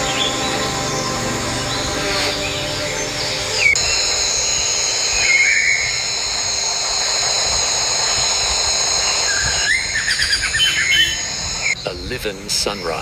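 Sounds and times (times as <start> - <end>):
held musical tone: 0.0 - 4.4
high-pitched drone: 0.0 - 6.1.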